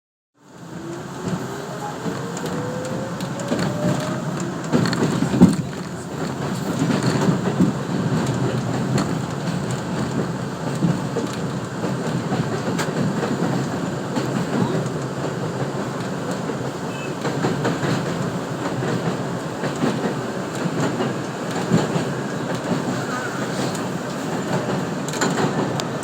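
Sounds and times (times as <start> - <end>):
train wheels rumbling on rail: 0.4 - 26.0
train motor whine: 0.5 - 7.4
wheel knocks on rail: 3.2 - 8.3.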